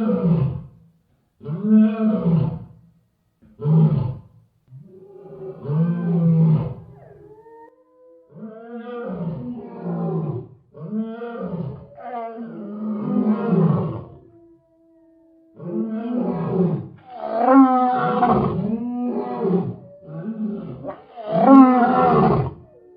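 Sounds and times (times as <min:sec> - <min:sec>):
lion roaring: 0:15.6 - 0:22.7.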